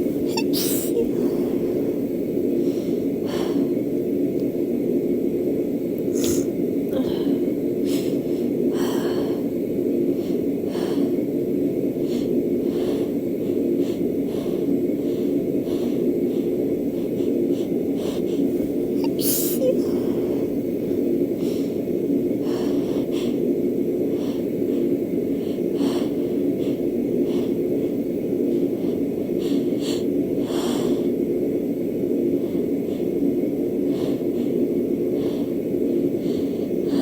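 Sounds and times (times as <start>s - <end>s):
steady low hum: 0.0s - 37.0s
woman sniffing: 0.2s - 1.6s, 6.1s - 7.2s, 15.7s - 20.5s
sharp hitching breaths: 6.1s - 37.0s.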